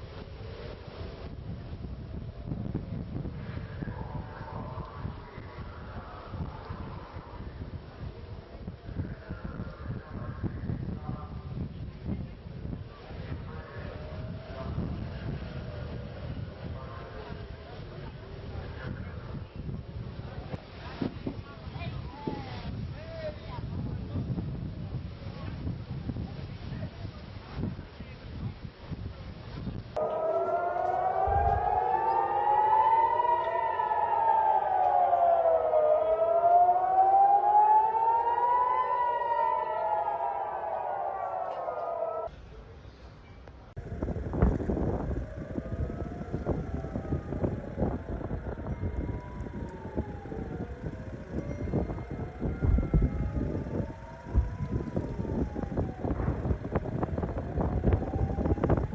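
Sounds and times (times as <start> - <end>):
wind buffeting microphone: 0.0 - 42.3, 43.6 - 58.9
air-raid siren wailing: 2.4 - 11.0, 13.5 - 17.1, 30.0 - 42.3, 43.8 - 58.9.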